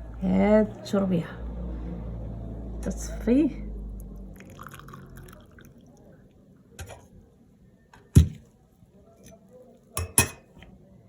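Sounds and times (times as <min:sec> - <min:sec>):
kitchenware knocking: 0:10.0 - 0:10.5.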